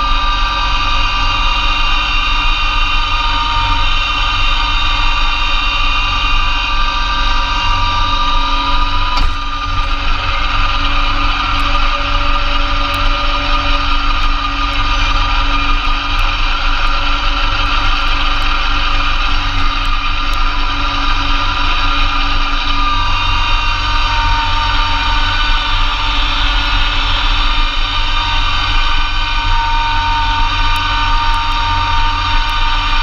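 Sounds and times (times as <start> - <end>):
diesel tractor engine running: 0.0 - 33.0.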